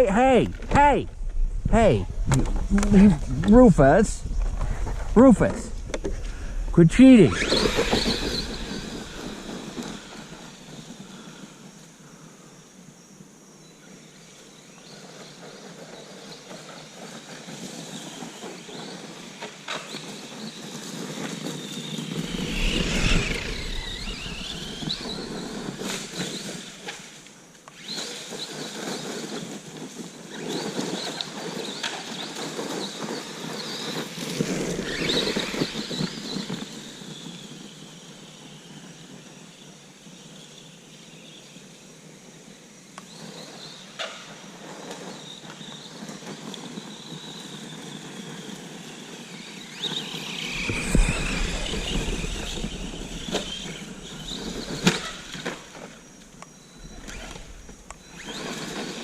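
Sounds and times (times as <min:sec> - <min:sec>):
tyre and drivetrain noise: 0:00.0 - 0:11.6, 0:15.2 - 0:38.1, 0:44.6 - 0:59.0
electric motor whining: 0:07.2 - 0:10.9, 0:21.8 - 0:26.8, 0:34.2 - 0:36.7, 0:49.8 - 0:59.0.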